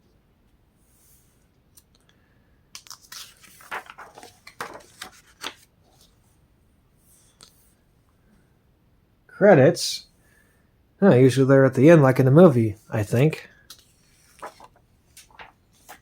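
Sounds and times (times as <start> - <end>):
book pages turning: 2.8 - 6.2, 13.2 - 16.0.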